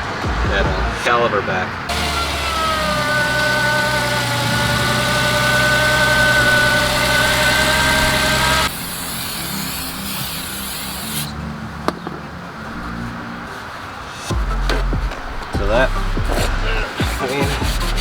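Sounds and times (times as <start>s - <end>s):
car engine idling: 0.3s - 9.0s.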